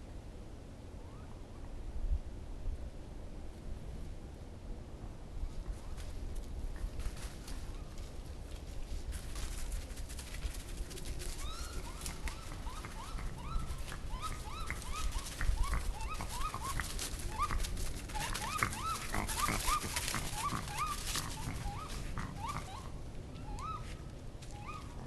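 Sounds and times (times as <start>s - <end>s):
animals yelping: 10.8s - 25.0s.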